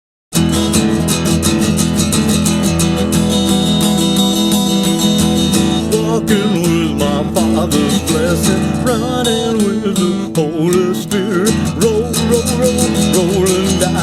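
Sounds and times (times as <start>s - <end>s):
strummed guitar: 0.3s - 14.0s
person singing: 3.7s - 14.0s.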